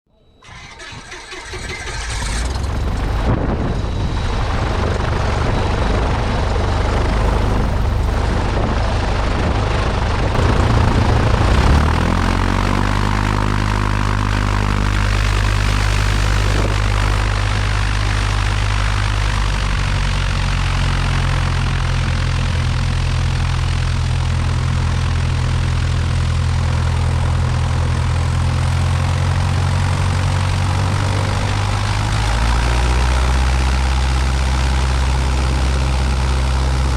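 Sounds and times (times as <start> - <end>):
light aircraft engine and propeller: 0.2 - 36.9
rush of noise: 0.4 - 23.5.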